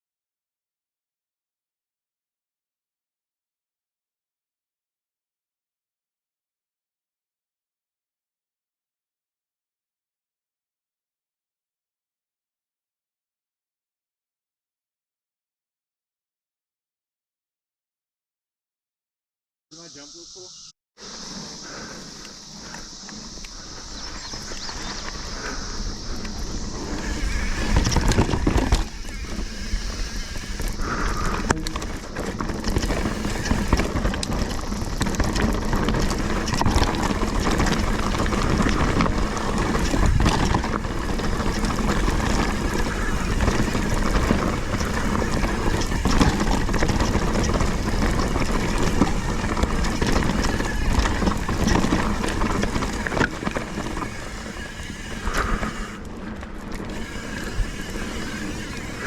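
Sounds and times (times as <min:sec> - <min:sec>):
bike tyres and frame clattering: 0:21.0 - 0:59.0
wind on microphone: 0:21.6 - 0:59.0.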